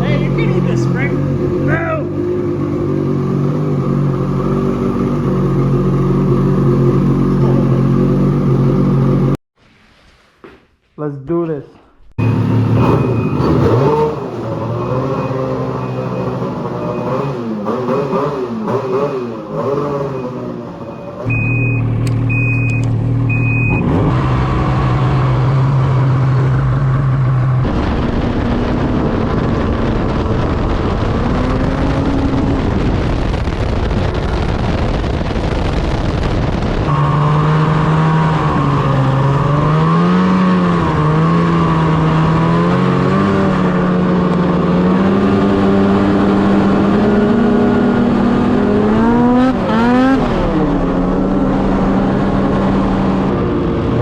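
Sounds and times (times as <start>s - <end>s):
snowmobile engine idling and revving: 0.0s - 9.4s, 12.2s - 54.0s
short electronic beeps: 12.2s - 17.7s, 18.9s - 24.0s.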